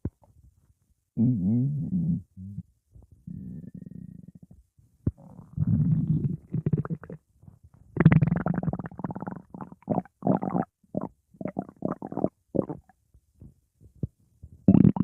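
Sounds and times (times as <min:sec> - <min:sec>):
stomach growling and gurgling: 0:03.2 - 0:07.2, 0:08.0 - 0:12.9, 0:14.0 - 0:15.0.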